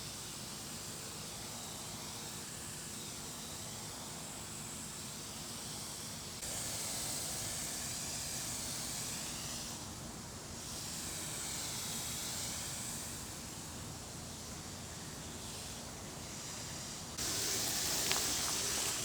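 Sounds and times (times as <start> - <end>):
sprayer nozzle hissing: 10.6 - 13.8, 14.9 - 19.0.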